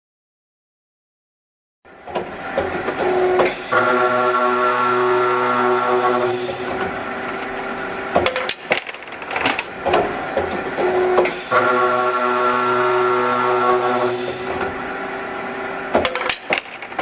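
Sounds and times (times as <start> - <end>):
pipe cutting saw whining: 2.5 - 8.3, 9.8 - 16.0
sharp clicks and knocks: 8.1 - 11.4, 15.9 - 17.0.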